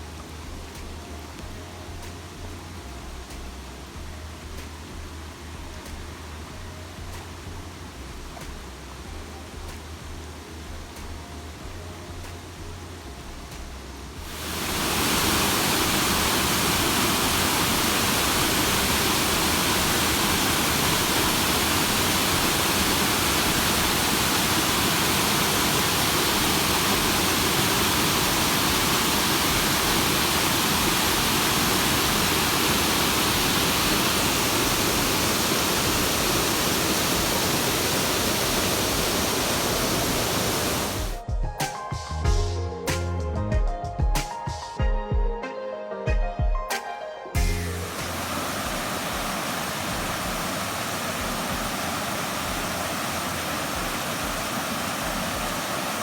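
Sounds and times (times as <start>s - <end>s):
music: 0.0s - 39.1s, 41.0s - 49.2s
waterfall rushing: 14.2s - 41.2s, 47.8s - 56.0s.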